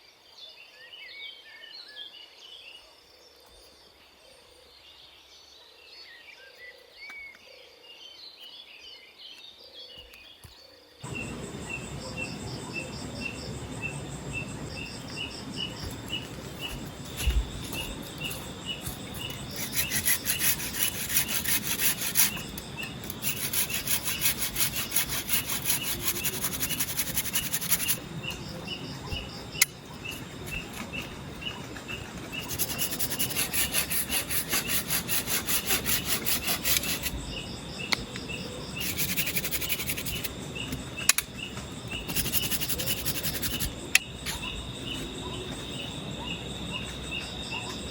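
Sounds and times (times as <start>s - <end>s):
crickets chirping: 10.4s - 47.9s
hand saw cutting wood: 15.6s - 28.0s, 32.4s - 37.2s, 38.8s - 40.3s, 42.0s - 43.7s.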